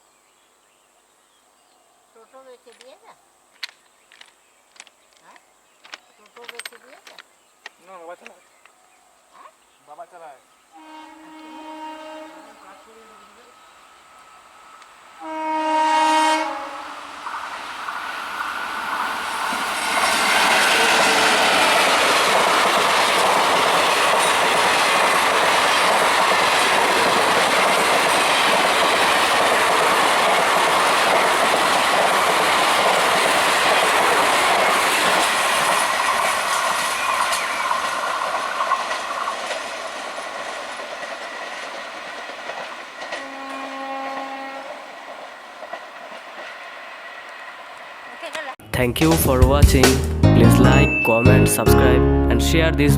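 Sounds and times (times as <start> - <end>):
locomotive horn blast: 10.8 - 13.4, 15.2 - 17.0, 43.2 - 44.9
train wheels rushing on rails: 12.9 - 48.6.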